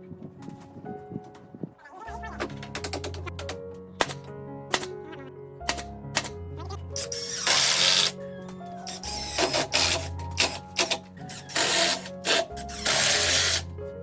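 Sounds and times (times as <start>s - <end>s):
background music: 0.0s - 14.0s
workshop tool bursts: 7.0s - 8.2s, 8.9s - 13.7s.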